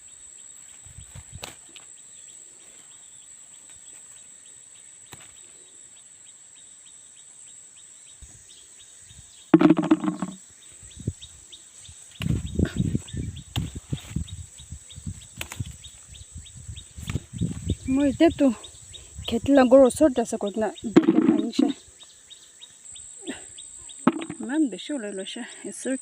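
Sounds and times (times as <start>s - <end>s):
insects whining: 0.0s - 26.0s
insect ticking: 8.8s - 24.8s.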